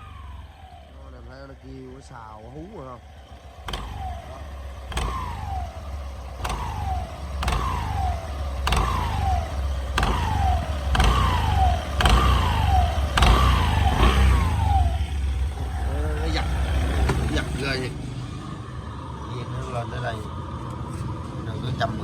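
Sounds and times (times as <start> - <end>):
clutch whine howling: 0.0 - 22.0
scooter engine running: 0.0 - 22.0
clutch click: 3.6 - 15.8, 16.4 - 17.8.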